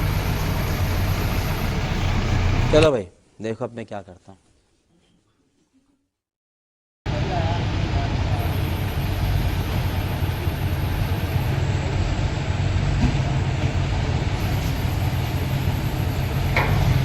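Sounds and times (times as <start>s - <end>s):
diesel engine running: 0.0s - 2.9s, 7.1s - 17.0s.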